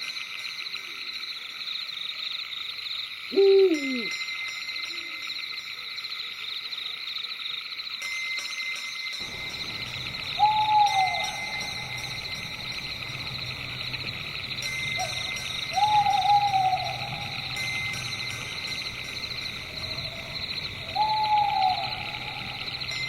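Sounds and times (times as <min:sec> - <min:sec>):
night insects trilling: 0:00.0 - 0:08.2, 0:09.2 - 0:23.0
owl hooting: 0:03.3 - 0:04.1, 0:09.2 - 0:23.0.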